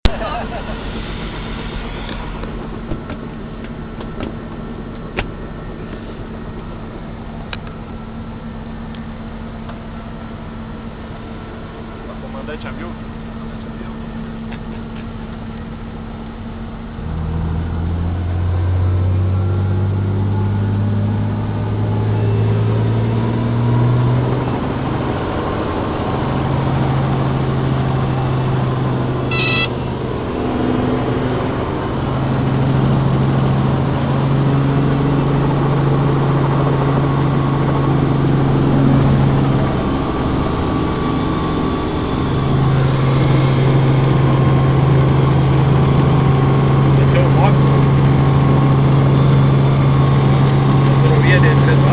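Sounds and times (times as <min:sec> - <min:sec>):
engine running: 0:00.0 - 0:51.9
short high beep: 0:29.3 - 0:30.0.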